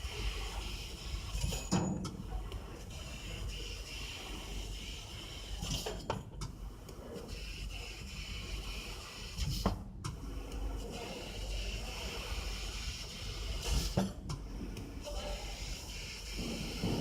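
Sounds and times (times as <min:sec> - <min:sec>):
laser cutting machine humming: 0:10.3 - 0:14.0, 0:14.8 - 0:17.0.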